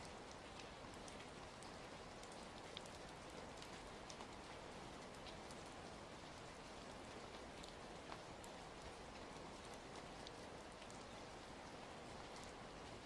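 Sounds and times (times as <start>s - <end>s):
soft steady rain: 0.0s - 13.0s
small ticks: 0.3s - 4.4s, 5.0s - 5.7s, 7.1s - 11.1s.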